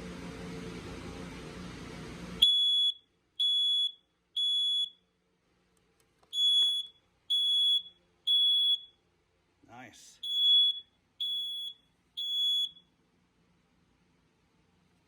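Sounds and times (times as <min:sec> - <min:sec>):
smoke alarm beeping: 0:02.4 - 0:05.1, 0:06.3 - 0:09.0, 0:10.2 - 0:13.0.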